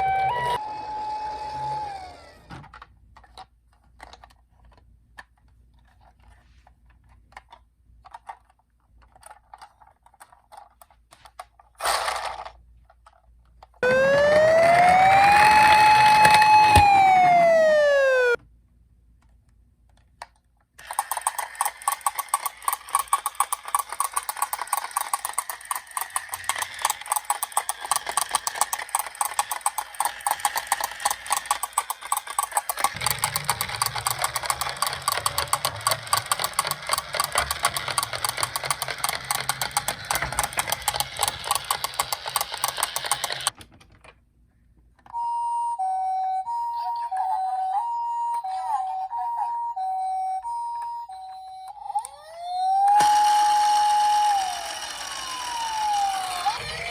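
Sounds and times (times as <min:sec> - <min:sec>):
siren wail: 0:00.0 - 0:02.2, 0:13.8 - 0:18.4, 0:47.7 - 0:56.9
toy cars rattling in a box: 0:11.7 - 0:13.2, 0:20.8 - 0:43.6, 0:53.0 - 0:56.9.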